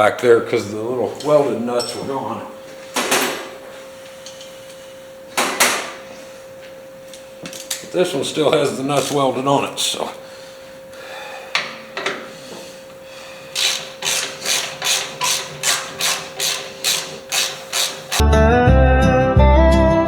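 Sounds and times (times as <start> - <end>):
ratchet wrench clicking: 13.6 - 18.2.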